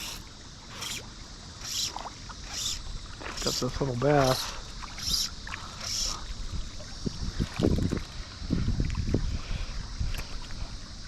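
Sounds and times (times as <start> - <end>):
wind buffeting microphone: 2.4 - 11.0.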